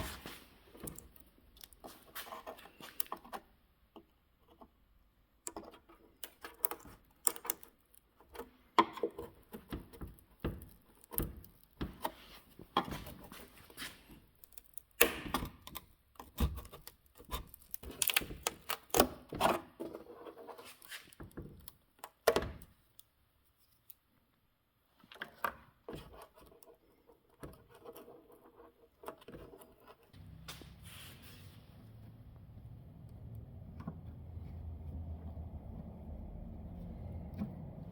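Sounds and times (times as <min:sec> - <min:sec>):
knocks clicks and scrapes of handwork: 0:00.0 - 0:24.1, 0:25.0 - 0:37.9.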